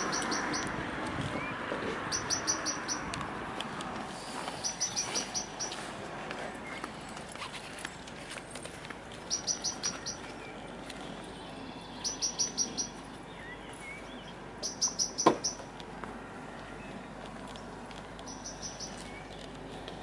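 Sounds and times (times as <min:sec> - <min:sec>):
songbird singing: 0:00.0 - 0:03.3, 0:04.2 - 0:15.8, 0:16.6 - 0:20.0
steady outdoor hiss: 0:00.0 - 0:20.0.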